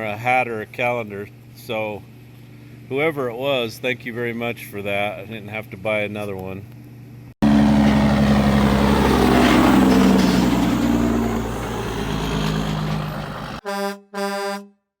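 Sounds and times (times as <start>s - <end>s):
heavy truck engine running: 7.4s - 13.6s
truck horn honks: 13.6s - 14.9s.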